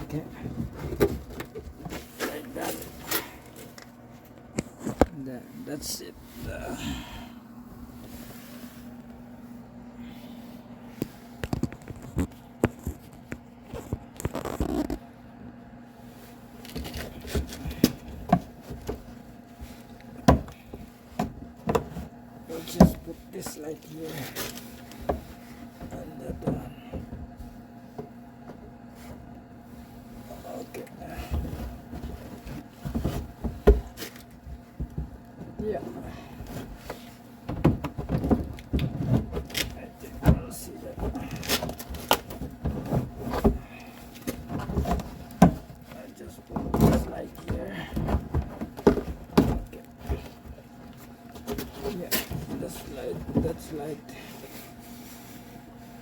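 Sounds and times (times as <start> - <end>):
steady low hum: 0.0 - 56.0
rubbing and scraping: 16.1 - 56.0.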